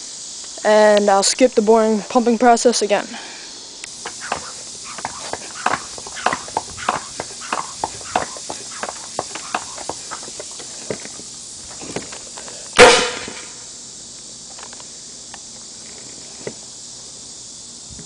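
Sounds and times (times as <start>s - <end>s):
air gun pop: 12.8s - 13.5s.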